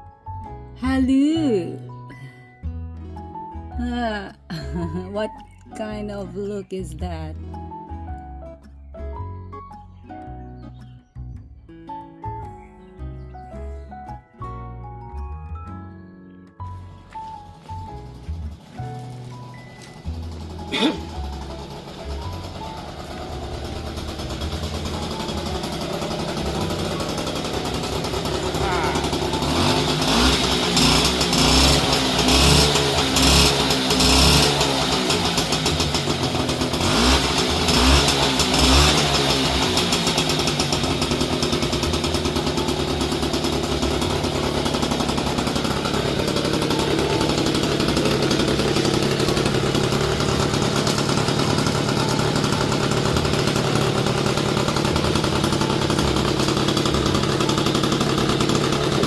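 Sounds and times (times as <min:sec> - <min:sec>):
moped engine revving and idling: 0:03.3 - 0:06.9, 0:16.8 - 0:59.0.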